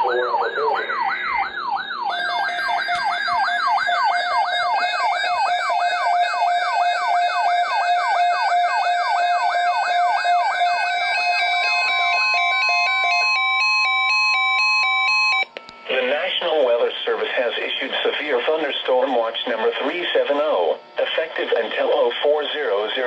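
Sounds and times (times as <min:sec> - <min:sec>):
electronic siren sweeping rapidly: 0:00.0 - 0:15.4.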